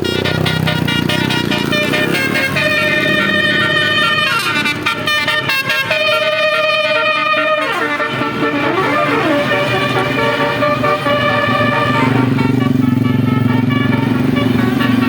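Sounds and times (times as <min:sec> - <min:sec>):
multi-tone bus horn melody: 0:00.0 - 0:15.0.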